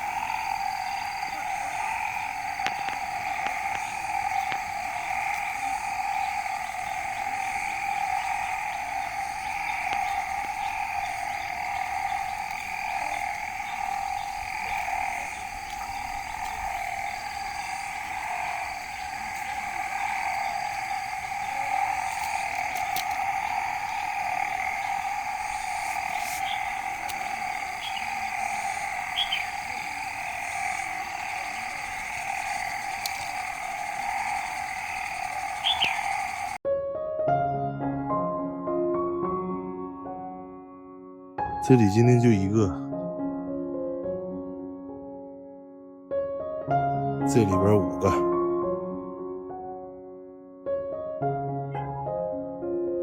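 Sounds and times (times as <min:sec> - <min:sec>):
chorus of calling animals: 0:00.0 - 0:36.6
faint clicks: 0:00.0 - 0:36.6.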